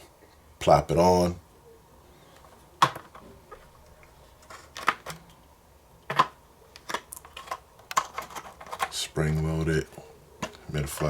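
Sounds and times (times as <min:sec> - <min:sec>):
plastic parts knocking and clicking: 0:02.8 - 0:03.7, 0:04.4 - 0:05.4, 0:06.0 - 0:09.0.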